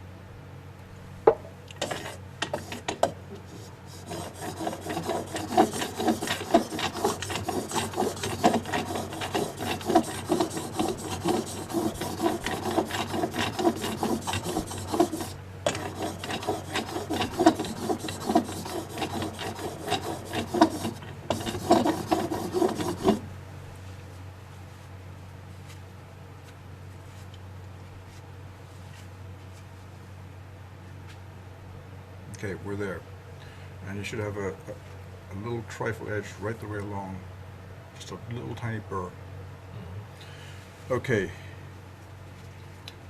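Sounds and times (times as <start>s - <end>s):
blade scraping on sharpening stone: 3.9s - 23.2s.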